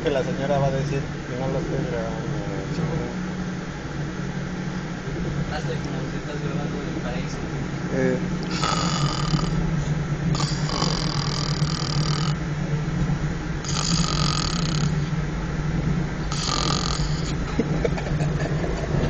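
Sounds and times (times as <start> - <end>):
subway train rumble: 0.0 - 19.0
person snoring: 8.4 - 9.6, 10.4 - 12.4, 13.6 - 15.1, 16.3 - 17.5.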